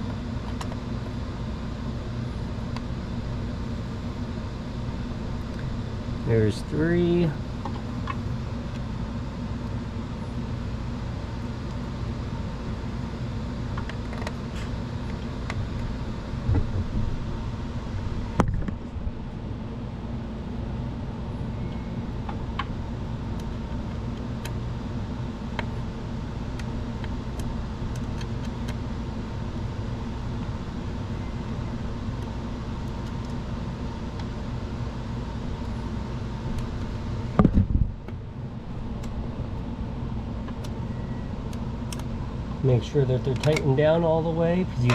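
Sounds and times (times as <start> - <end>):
low mechanical hum: 0.0 - 44.9.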